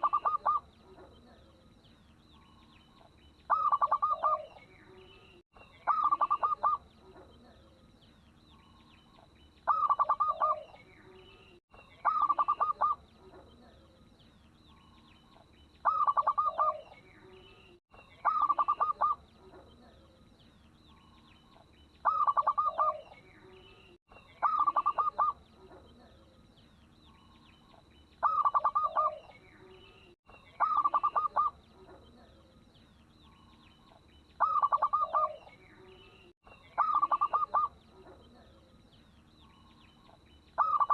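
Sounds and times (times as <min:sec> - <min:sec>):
dove cooing: 0:00.0 - 0:01.5, 0:03.5 - 0:04.7, 0:05.8 - 0:07.7, 0:09.7 - 0:10.8, 0:12.0 - 0:13.9, 0:15.8 - 0:17.4, 0:18.2 - 0:20.1, 0:22.0 - 0:23.6, 0:24.4 - 0:26.2, 0:28.2 - 0:29.4, 0:30.6 - 0:32.5, 0:34.4 - 0:35.6, 0:36.8 - 0:38.6, 0:40.6 - 0:40.9
small birds chirping: 0:00.0 - 0:40.9.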